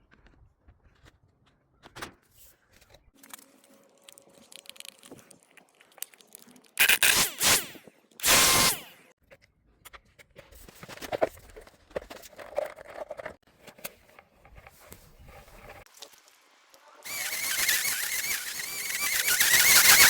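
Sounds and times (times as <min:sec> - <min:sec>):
grass trimmer motor: 0:06.8 - 0:08.9, 0:17.0 - 0:20.0
scraping: 0:17.1 - 0:20.0.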